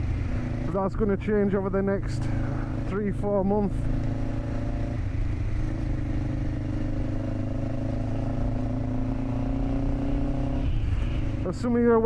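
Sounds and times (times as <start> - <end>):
motorcycle engine running: 0.0 - 12.0
wind and road noise: 0.0 - 12.0.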